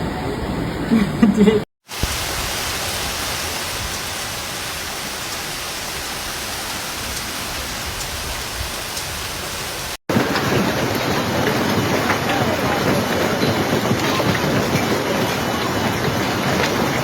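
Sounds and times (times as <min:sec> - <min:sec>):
heavy rain pouring: 0:01.8 - 0:17.0.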